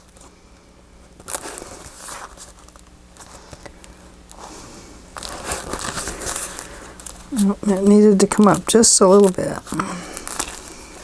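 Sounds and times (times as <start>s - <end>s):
paper rustling and crinkling: 1.1s - 11.0s.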